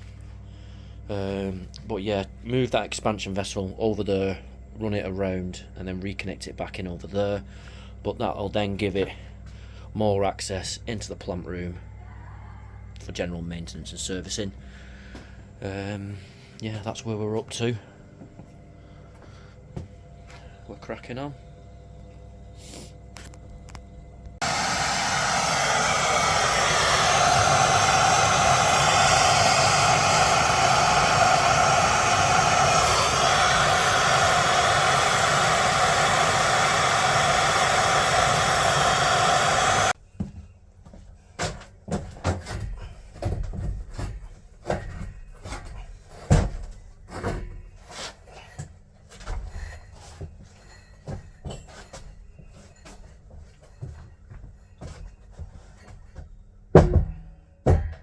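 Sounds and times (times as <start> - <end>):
power tool motor running: 24.4 - 40.0.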